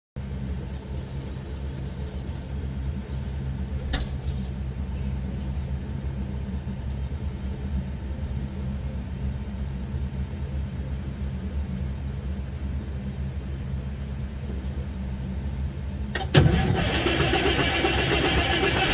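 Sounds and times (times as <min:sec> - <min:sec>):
diesel engine starting: 0:03.1 - 0:06.9, 0:16.1 - 0:18.9.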